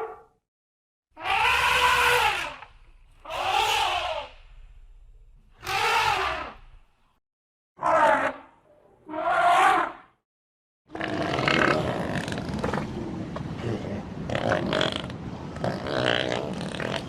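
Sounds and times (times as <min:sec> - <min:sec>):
elephant trumpeting: 0:01.2 - 0:04.4, 0:05.6 - 0:06.7.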